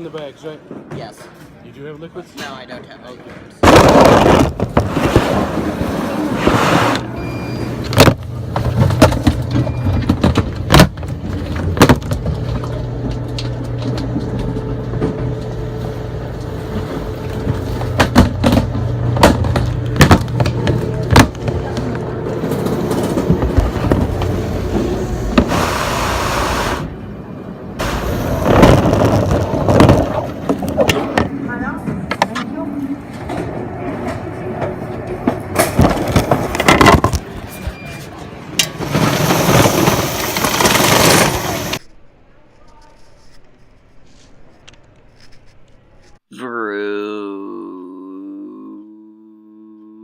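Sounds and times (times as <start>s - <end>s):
low machine hum: 7.0s - 36.7s
trays and bags clacking: 38.6s - 41.8s.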